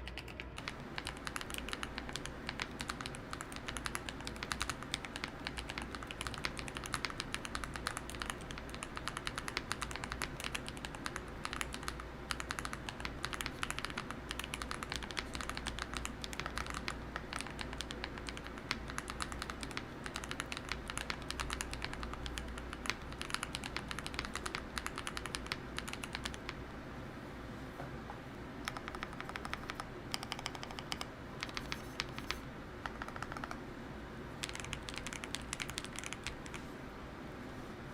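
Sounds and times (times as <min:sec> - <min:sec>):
fast typing on mechanical keyboard: 0:00.0 - 0:26.6, 0:28.6 - 0:33.6, 0:34.4 - 0:36.6.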